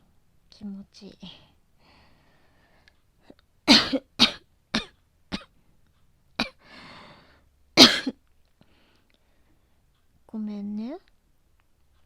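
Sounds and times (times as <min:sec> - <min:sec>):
drawn-out breath: 0:01.8 - 0:03.0, 0:06.6 - 0:07.5
woman coughing: 0:03.7 - 0:05.5, 0:06.4 - 0:06.6, 0:07.8 - 0:08.2.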